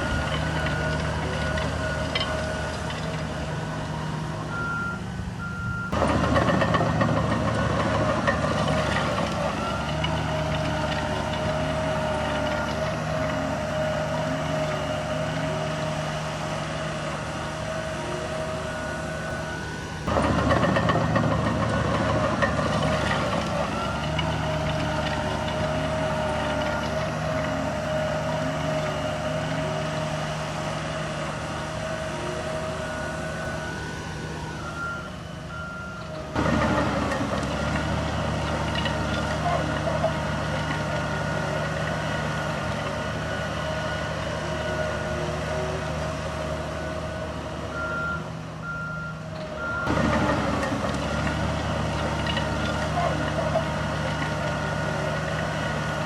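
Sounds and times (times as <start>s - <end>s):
heavy diesel machinery running: 0.0s - 56.0s
constant high tone: 10.6s - 36.3s.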